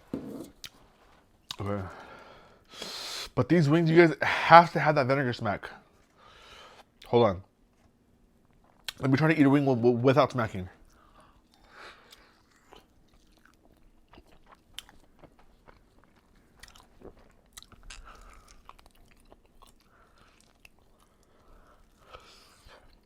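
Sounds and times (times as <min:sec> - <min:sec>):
person chewing: 0:10.8 - 0:23.0.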